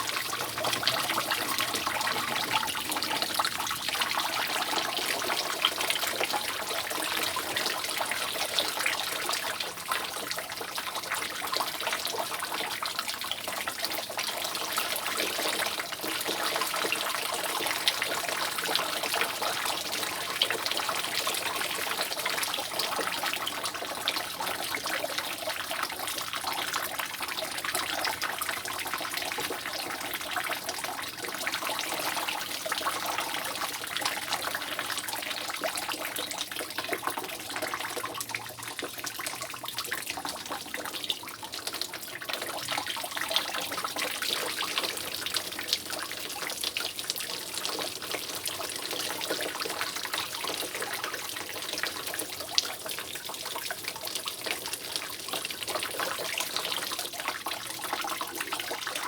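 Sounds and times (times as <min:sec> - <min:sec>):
rain: 0:00.0 - 0:59.0
water dripping from roof leak: 0:00.0 - 0:59.0.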